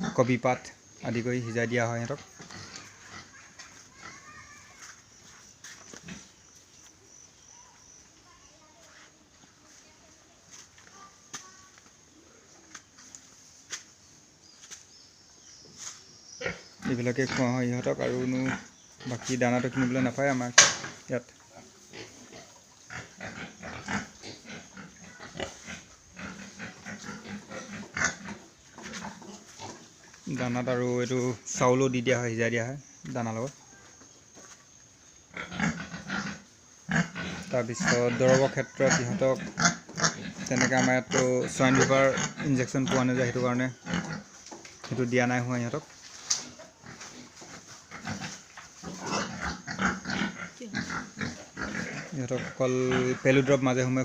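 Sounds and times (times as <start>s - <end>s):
pigs grunting and snuffling: 1.9s - 4.2s, 5.9s - 6.4s, 16.4s - 31.0s, 35.2s - 54.0s.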